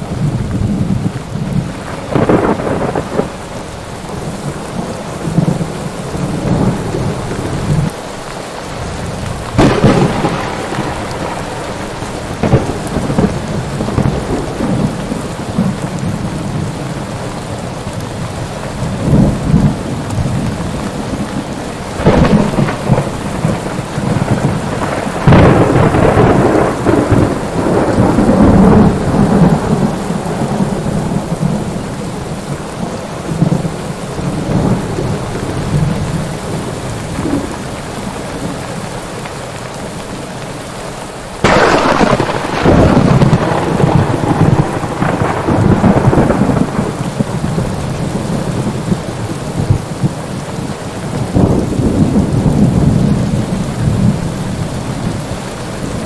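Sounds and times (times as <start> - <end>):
rolling thunder rumble: 0.0 - 8.0, 8.7 - 17.4, 18.0 - 38.7, 41.4 - 56.0
heavy rain: 0.0 - 56.0
thunder cracks: 1.6 - 3.4, 8.8 - 16.2, 21.1 - 31.8, 41.4 - 50.2, 51.1 - 54.2.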